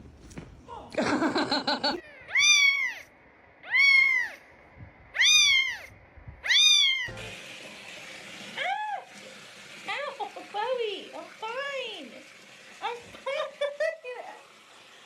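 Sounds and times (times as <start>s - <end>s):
cat meowing: 2.0s - 4.4s, 5.1s - 7.1s.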